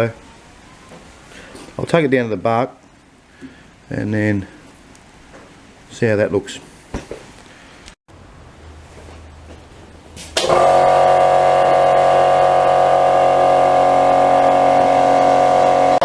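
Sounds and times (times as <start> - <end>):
wood lathe humming and whining: 10.5 - 16.0.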